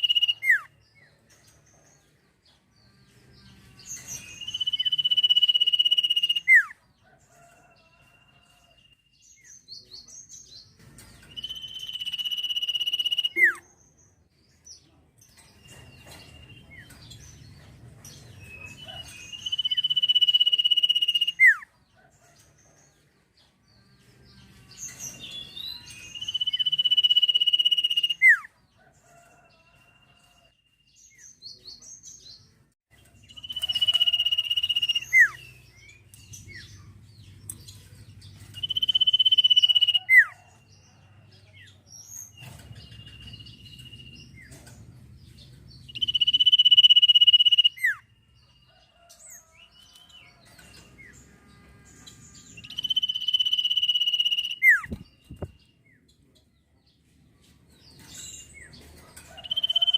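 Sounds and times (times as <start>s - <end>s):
songbird whistling: 0.0s - 0.7s, 4.2s - 6.7s, 11.3s - 13.6s, 19.4s - 21.6s, 26.1s - 28.4s, 33.4s - 35.5s, 38.6s - 40.3s, 45.9s - 48.0s, 52.6s - 55.0s.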